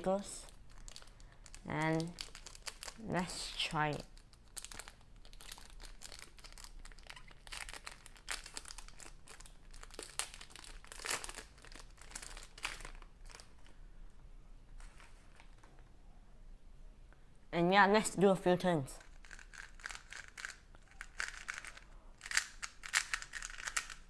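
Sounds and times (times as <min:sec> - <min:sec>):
plastic puzzle cube clicking: 0:19.3 - 0:24.0.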